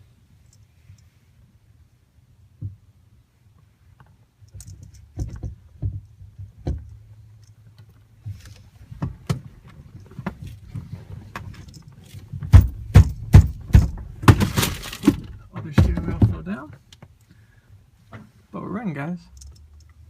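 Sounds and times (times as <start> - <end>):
clicks and knocks of steering wheel: 4.6 - 7.1, 8.3 - 17.1
loud thumps: 12.3 - 16.6.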